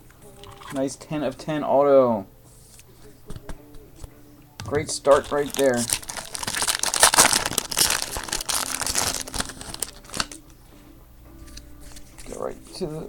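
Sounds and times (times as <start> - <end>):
foil wrapper crinkling and tearing: 5.0 - 10.4.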